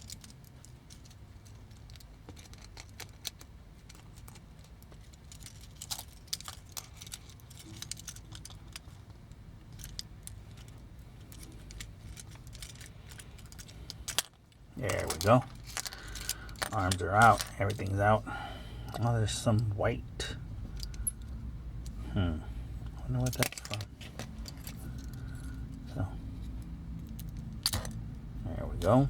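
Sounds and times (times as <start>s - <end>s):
plastic toy parts clicking: 0.0s - 9.0s, 23.2s - 25.2s
low steady hum: 0.0s - 29.0s.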